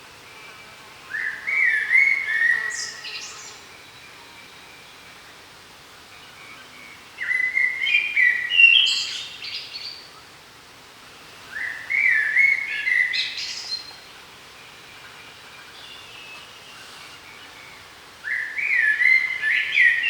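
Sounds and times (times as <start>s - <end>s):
songbird whistling: 15.9s - 20.0s.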